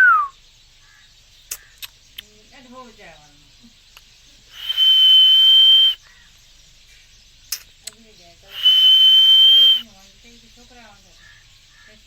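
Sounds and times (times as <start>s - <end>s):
parakeet high whistle: 0.0s - 0.3s, 4.6s - 6.0s, 8.5s - 9.8s.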